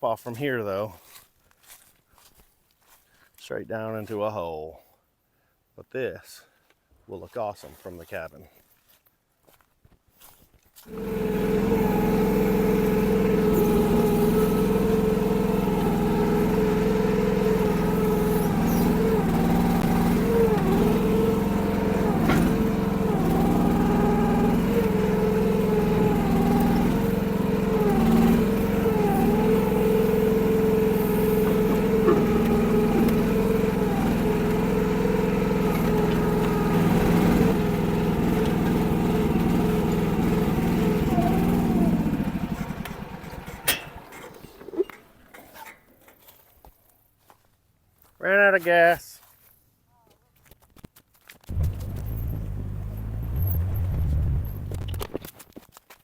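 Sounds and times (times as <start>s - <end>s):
mini excavator engine running: 10.8s - 46.6s, 51.5s - 55.3s.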